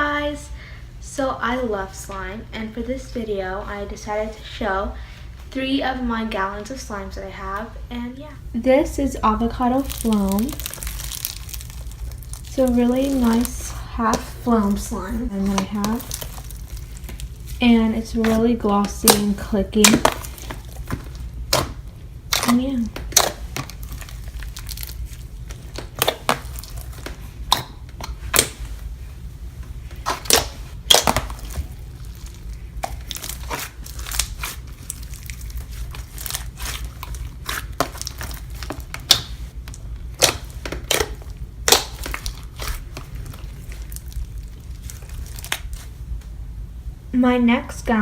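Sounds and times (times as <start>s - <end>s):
slime clicking and crackling: 9.6s - 28.8s, 29.9s - 46.0s.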